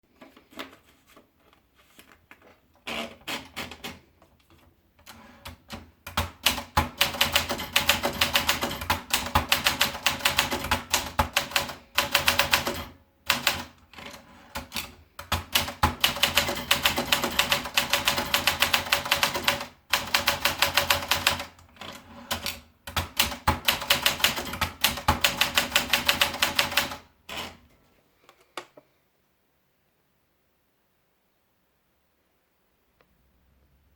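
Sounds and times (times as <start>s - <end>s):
manual typewriter typing: 2.9s - 4.1s, 5.0s - 27.6s.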